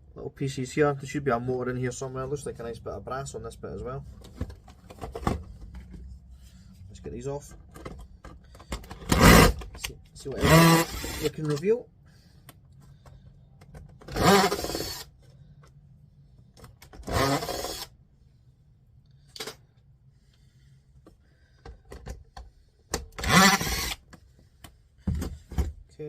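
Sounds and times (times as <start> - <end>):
cordless drill whining: 9.0 - 9.6, 10.4 - 11.4, 14.1 - 15.1, 17.0 - 17.9, 23.2 - 24.0.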